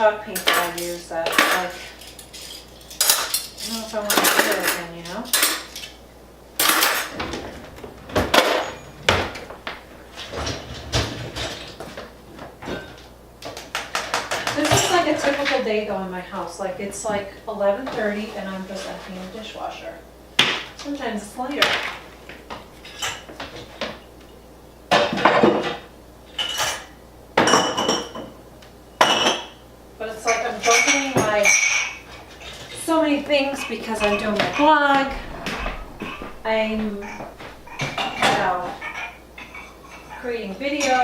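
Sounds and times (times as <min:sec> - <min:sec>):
dishes and cutlery clattering: 0:00.3 - 0:06.0, 0:06.6 - 0:12.0, 0:25.0 - 0:28.3, 0:30.2 - 0:41.0
dishes knocking: 0:06.6 - 0:11.6, 0:33.5 - 0:40.1
cupboard and rack movements: 0:06.9 - 0:12.6, 0:32.2 - 0:40.1.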